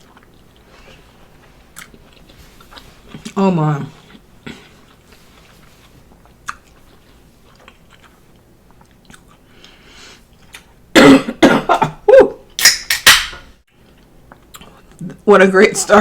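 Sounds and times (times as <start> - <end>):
faint chewing: 0.0 - 10.8, 13.7 - 15.2
person coughing hard: 11.0 - 12.0.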